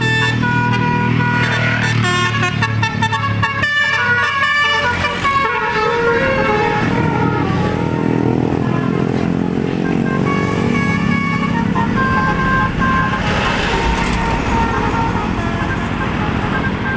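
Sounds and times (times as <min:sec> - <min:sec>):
bus engine rumble: 0:00.0 - 0:16.9
multi-tone bus horn melody: 0:00.0 - 0:16.9.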